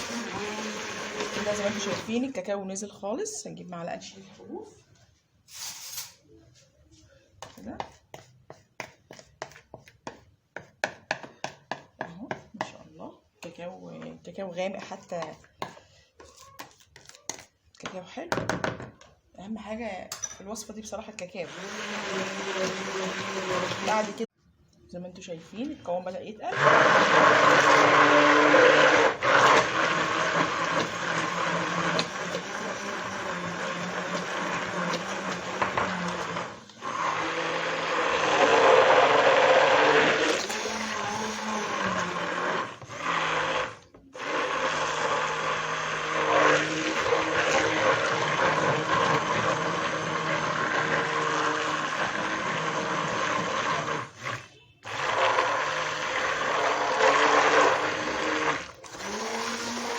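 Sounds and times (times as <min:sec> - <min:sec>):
blender motor running: 0:00.0 - 0:02.1, 0:21.5 - 0:24.2, 0:26.5 - 0:59.9.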